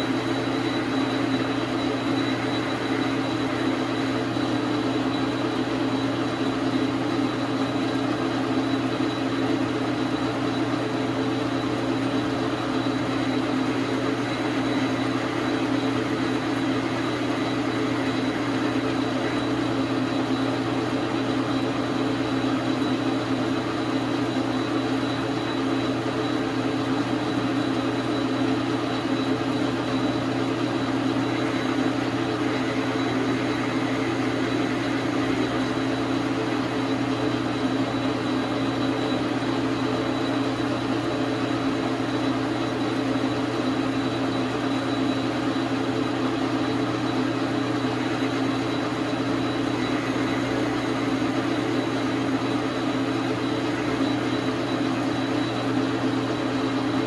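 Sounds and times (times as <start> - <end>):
thin high whine: 0.0 - 6.7, 11.7 - 21.7, 28.8 - 40.8, 46.1 - 57.0
metal lathe running: 0.0 - 57.0.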